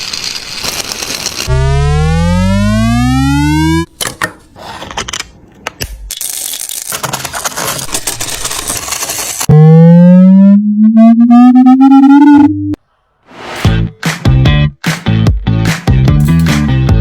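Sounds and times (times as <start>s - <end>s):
electronic rising tone: 1.5s - 3.9s, 9.5s - 12.8s.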